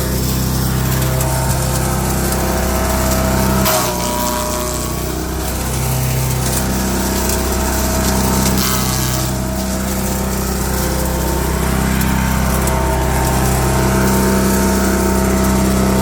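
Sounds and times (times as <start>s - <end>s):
wood chipper engine running: 0.0s - 16.0s.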